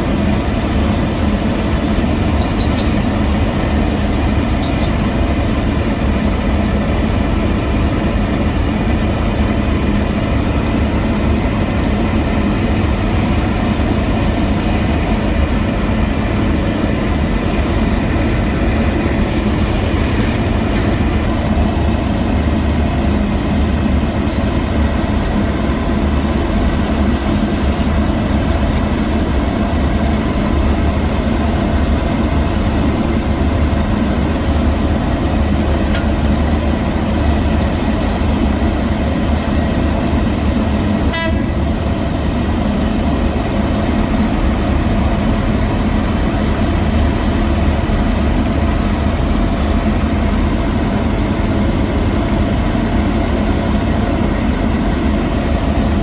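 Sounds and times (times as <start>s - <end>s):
diesel paving machinery running: 0.0s - 56.0s.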